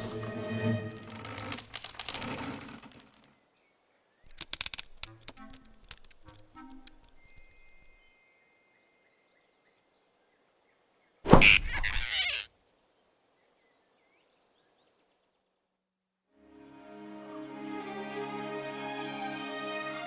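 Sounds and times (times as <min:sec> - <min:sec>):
music: 0:00.0 - 0:01.6, 0:05.1 - 0:09.0, 0:16.4 - 0:20.0
faint woodland ambience: 0:00.0 - 0:15.8
small bird chirps: 0:11.4 - 0:12.5.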